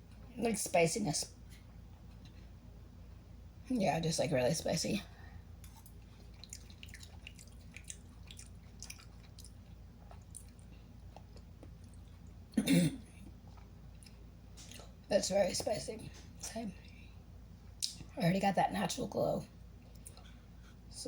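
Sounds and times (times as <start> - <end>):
person chewing noodles: 5.6 - 12.5
cough or throat clearing: 12.6 - 13.2.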